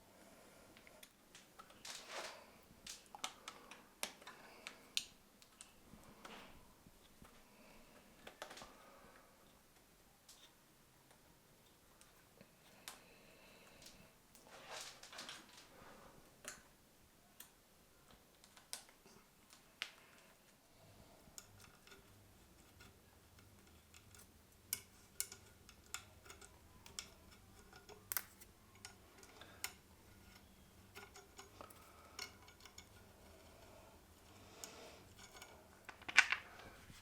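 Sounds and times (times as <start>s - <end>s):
clicks and taps of tools: 23.4s - 29.8s.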